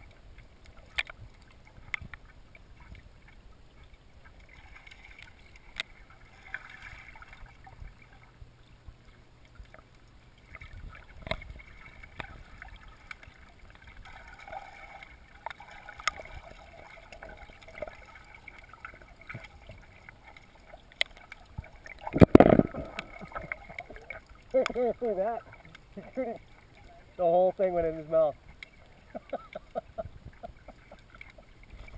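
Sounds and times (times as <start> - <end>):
water sloshing and gurgling: 0.0 - 31.9.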